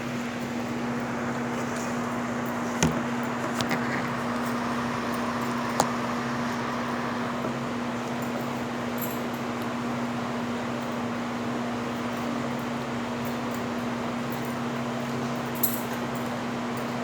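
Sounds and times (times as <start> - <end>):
fan humming: 0.0 - 10.2.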